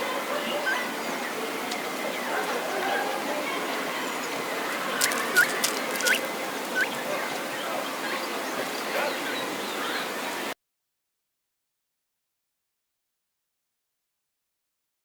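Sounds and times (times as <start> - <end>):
bird calling sharp notes: 5.0 - 7.3.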